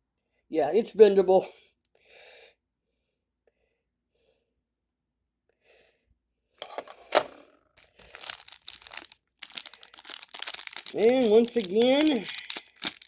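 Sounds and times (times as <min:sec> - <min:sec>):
plastic packaging crinkling and tearing: 0:07.0 - 0:13.0.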